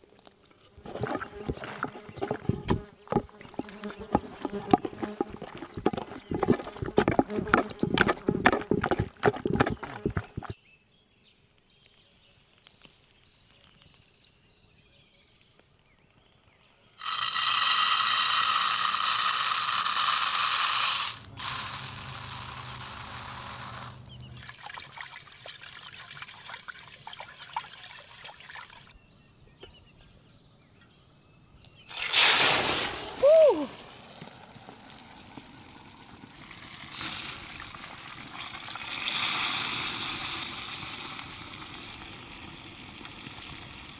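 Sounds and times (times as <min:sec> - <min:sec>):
liquid being poured: 0:00.8 - 0:10.6, 0:17.0 - 0:28.9, 0:31.9 - 0:43.9.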